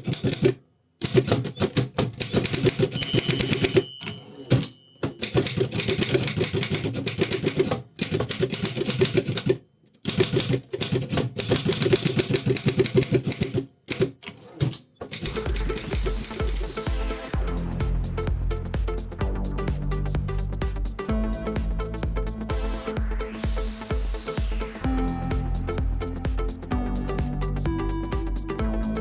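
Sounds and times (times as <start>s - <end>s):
typewriter keystroke clacks: 0.0s - 16.6s
typewriter bell ringing: 2.8s - 6.5s
music with steady beat: 15.2s - 29.0s.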